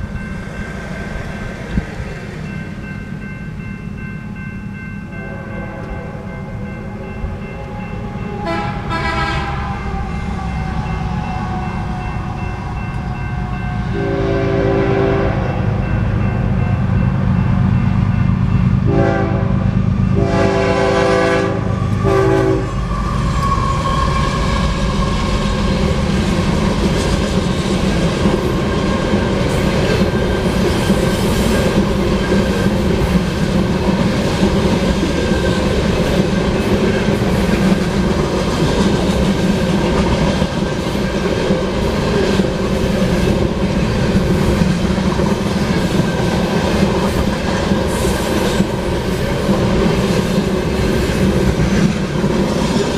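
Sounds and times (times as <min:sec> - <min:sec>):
train rumbling past: 0:00.0 - 0:52.9
train horn blasts: 0:05.1 - 0:15.9, 0:18.8 - 0:22.9.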